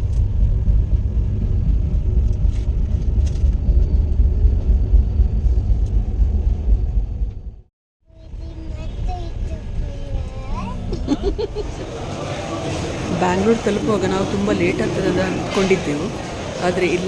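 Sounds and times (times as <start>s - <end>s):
train rumbling: 0.0s - 17.0s.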